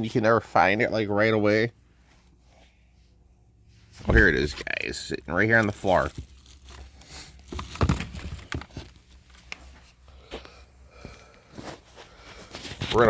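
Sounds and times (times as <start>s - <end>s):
handling clicks and knocks: 5.6s - 9.7s.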